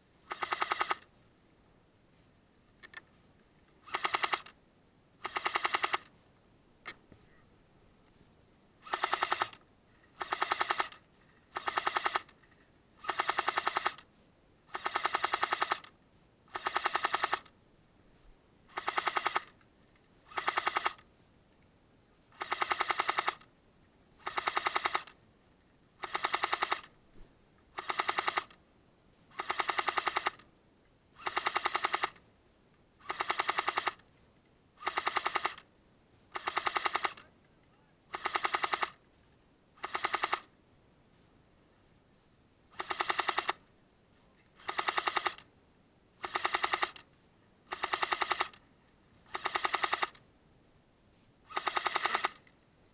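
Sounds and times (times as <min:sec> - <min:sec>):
airsoft gun firing bursts: 0:00.3 - 0:01.1, 0:03.8 - 0:04.6, 0:05.2 - 0:06.1, 0:08.8 - 0:09.6, 0:10.2 - 0:12.4, 0:13.0 - 0:14.0, 0:14.7 - 0:15.9, 0:16.5 - 0:17.5, 0:18.7 - 0:19.6, 0:20.3 - 0:21.0, 0:22.3 - 0:23.5, 0:24.2 - 0:25.2, 0:26.0 - 0:26.9, 0:27.8 - 0:28.6, 0:29.3 - 0:30.4, 0:31.2 - 0:32.2, 0:33.0 - 0:34.0, 0:34.8 - 0:35.6, 0:36.3 - 0:37.2, 0:38.1 - 0:39.0, 0:42.8 - 0:43.6, 0:44.6 - 0:45.4, 0:46.2 - 0:47.0, 0:47.7 - 0:48.6, 0:49.3 - 0:50.2, 0:51.5 - 0:52.5.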